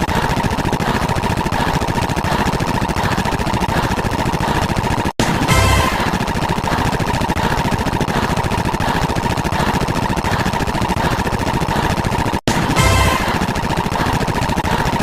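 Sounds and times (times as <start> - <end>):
layered video game win sound: 5.2 - 6.7, 12.5 - 13.9
burst of tones: 5.2 - 7.0, 12.5 - 14.0.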